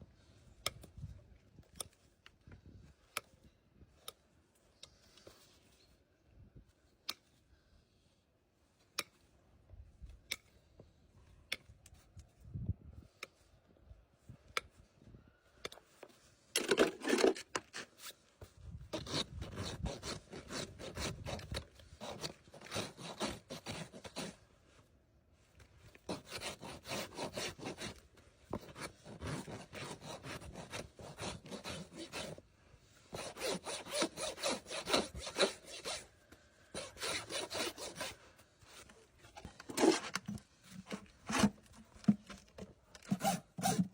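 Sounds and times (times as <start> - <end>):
rasp filing a hoof: 18.9 - 24.5, 26.0 - 32.4, 33.1 - 42.2, 43.0 - 43.9.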